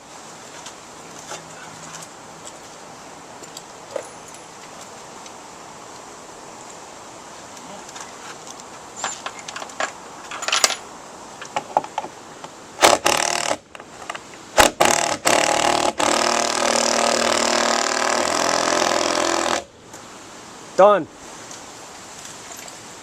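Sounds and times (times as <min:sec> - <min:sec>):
impact driver hammering: 0:12.8 - 0:13.6, 0:14.6 - 0:19.7.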